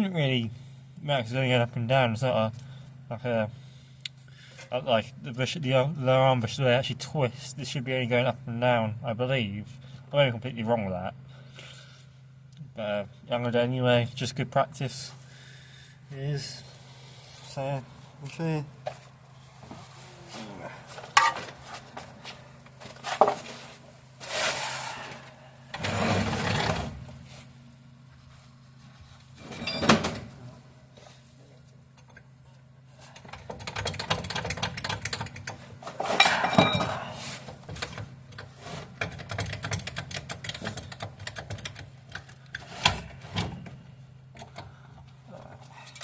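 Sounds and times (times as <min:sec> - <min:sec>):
steady low hum: 0:00.0 - 0:46.0
metal tools clinking: 0:36.0 - 0:37.2.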